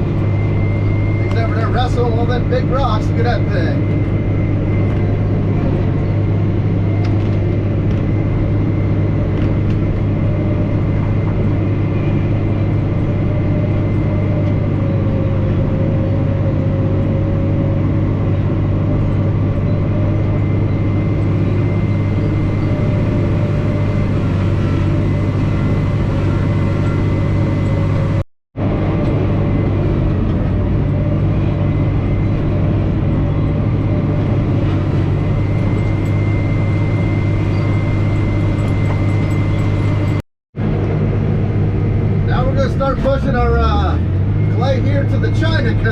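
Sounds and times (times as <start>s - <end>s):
dozer diesel engine droning: 0.0s - 45.9s.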